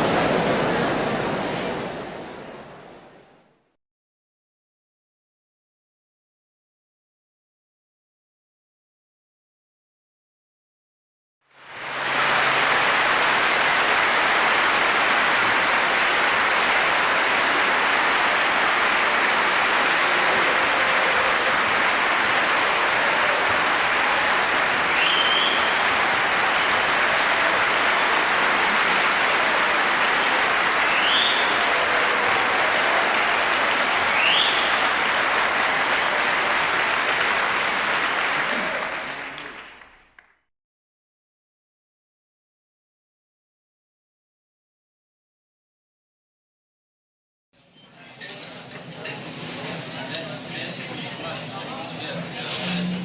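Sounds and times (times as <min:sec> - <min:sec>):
crowd applauding: 0:00.0 - 0:03.2, 0:11.5 - 0:40.5
short rising whistles: 0:24.9 - 0:26.0, 0:30.8 - 0:31.7, 0:34.1 - 0:34.9.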